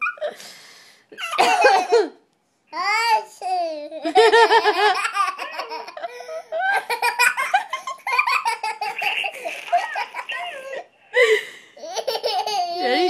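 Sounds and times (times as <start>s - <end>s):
toddler laughing and giggling: 3.8s - 10.8s, 11.8s - 13.0s.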